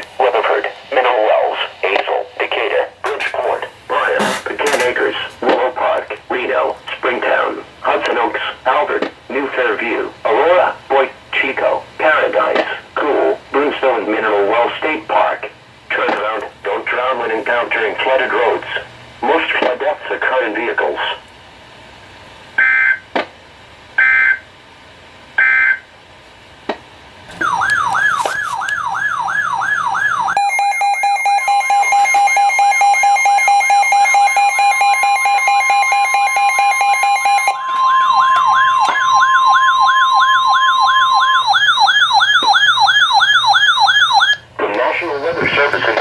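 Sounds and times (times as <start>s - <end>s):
steady beeping tones: 27.3s - 44.4s
warbling electronic alert tone: 27.3s - 44.4s.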